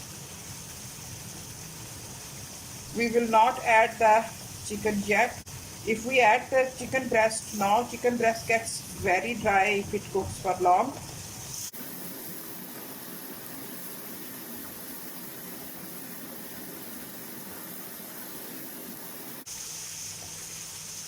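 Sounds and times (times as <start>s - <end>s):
gravy bubbling and sizzling: 0.0s - 21.0s.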